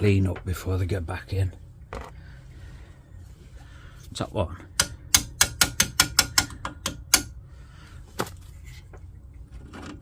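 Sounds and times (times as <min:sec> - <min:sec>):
hammer striking steel bolt: 0:04.8 - 0:07.3.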